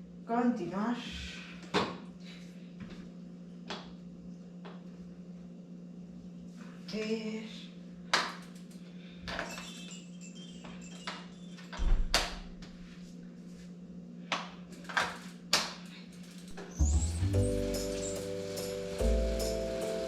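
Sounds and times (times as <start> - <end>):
bicycle trainer humming: 15.9 - 20.0.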